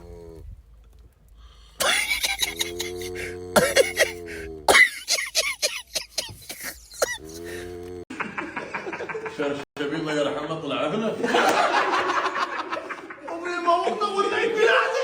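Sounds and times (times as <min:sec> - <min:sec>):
person snoring: 0:01.8 - 0:04.8, 0:06.5 - 0:08.1.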